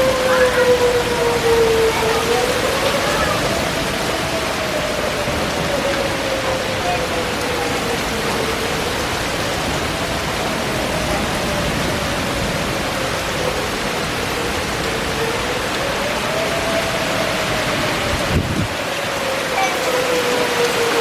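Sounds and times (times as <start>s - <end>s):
warning siren wailing: 0.0s - 21.0s
rain hissing: 7.1s - 21.0s.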